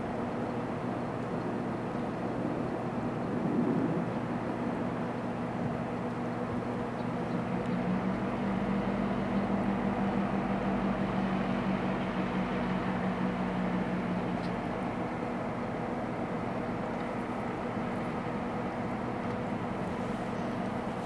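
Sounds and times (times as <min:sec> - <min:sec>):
diesel locomotive engine drone: 0:00.0 - 0:21.0.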